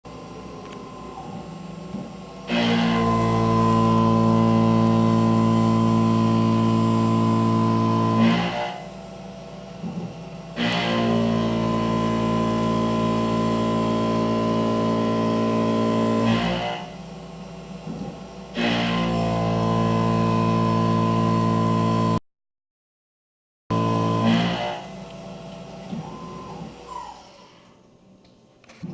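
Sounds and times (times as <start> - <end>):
machine whirring: 0.1 - 22.2, 23.7 - 27.8
milling machine cutting metal: 2.2 - 9.0, 9.8 - 22.2, 23.7 - 26.9.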